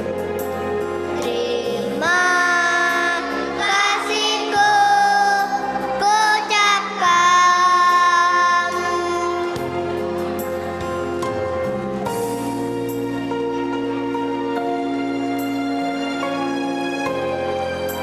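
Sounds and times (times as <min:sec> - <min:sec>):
music playing: 0:00.0 - 0:18.0
children's choir singing: 0:01.2 - 0:09.8.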